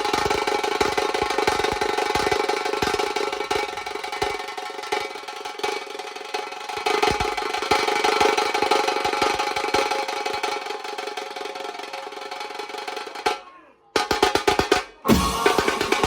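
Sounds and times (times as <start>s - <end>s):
fast drumming: 14.0s - 16.0s
banjo band melody: 15.1s - 16.0s.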